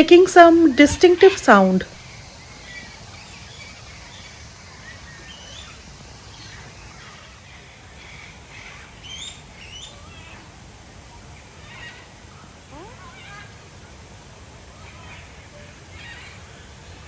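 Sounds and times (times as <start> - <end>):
birds chirping and calling: 0.3 - 10.6.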